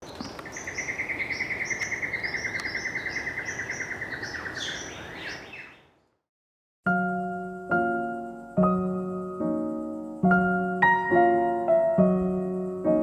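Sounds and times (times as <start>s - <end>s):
birds short rising chirps: 0.0s - 6.0s
bird rapid pulsing trill: 0.5s - 5.7s.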